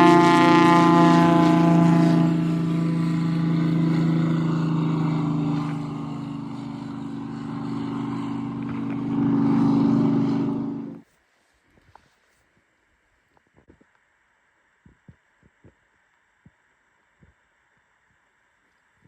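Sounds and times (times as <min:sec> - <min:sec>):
propeller plane engine running: 0:00.0 - 0:11.0.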